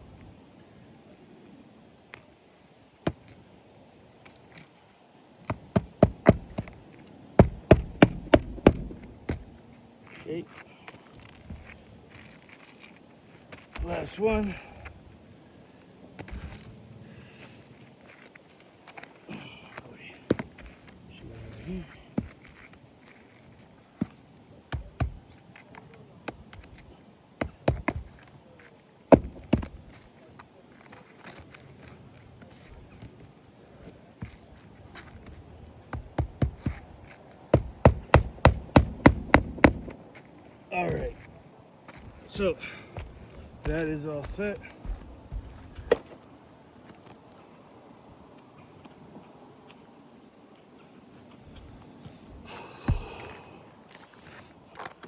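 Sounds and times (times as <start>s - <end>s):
hammer striking nails into shingles: 5.4s - 6.8s, 7.4s - 9.6s, 13.6s - 14.9s, 20.3s - 20.8s, 24.0s - 25.4s, 27.4s - 28.3s, 29.1s - 30.0s, 35.2s - 40.0s, 42.0s - 46.2s, 52.5s - 53.5s.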